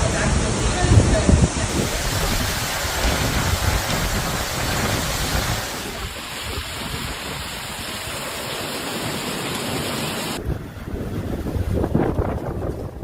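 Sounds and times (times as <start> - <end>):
wind rumble on microphone: 0.0 - 7.9, 10.3 - 13.0
water rushing: 0.0 - 12.6.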